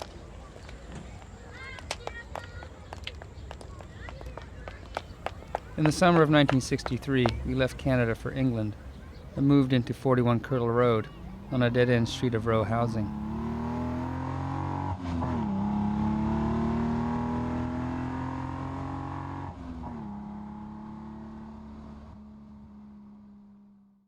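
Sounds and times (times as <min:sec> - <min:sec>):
vehicle engine accelerating through gears: 0:13.0 - 0:23.7.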